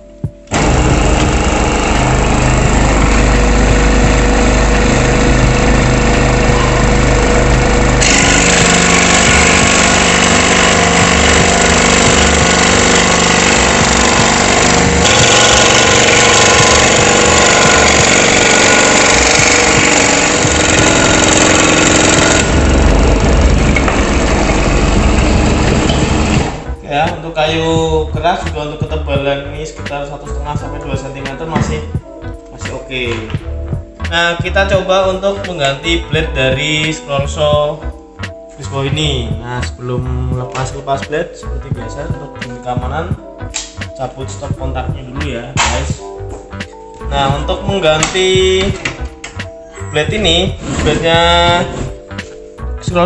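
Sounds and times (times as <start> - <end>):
scroll saw cutting wood: 0.5 - 26.6, 50.6 - 52.0.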